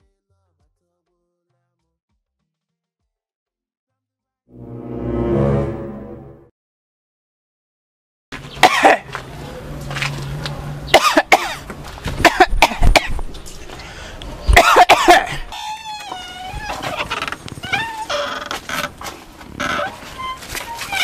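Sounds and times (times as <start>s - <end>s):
person coughing harshly: 8.6s - 9.1s, 11.0s - 11.6s, 12.2s - 13.2s, 14.6s - 15.5s.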